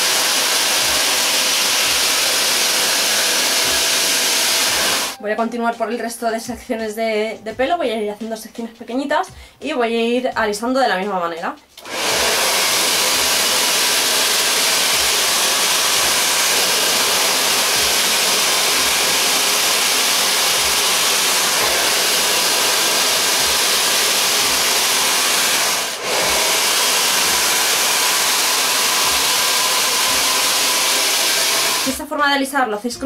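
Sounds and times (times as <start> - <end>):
hair dryer blowing: 0.0 - 5.2, 11.8 - 32.0.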